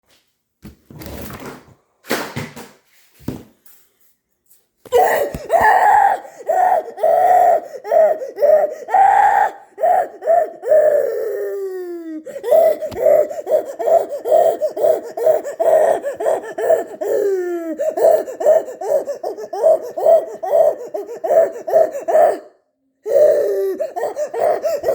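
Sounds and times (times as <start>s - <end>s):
breathy huffs: 4.9s - 24.9s
high-pitched wheezing laugh: 4.9s - 24.9s.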